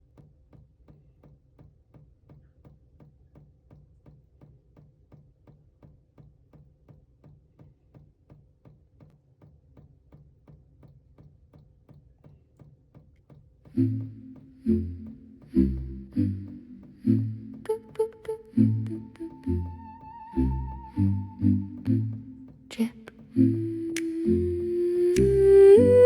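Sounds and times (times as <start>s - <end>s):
faint even ticking: 13.8s - 26.0s
low hum: 13.8s - 26.0s.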